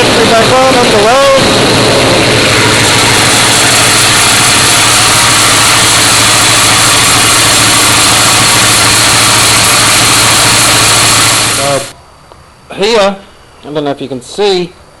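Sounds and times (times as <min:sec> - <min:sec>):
car engine idling loudly: 0:00.0 - 0:12.0.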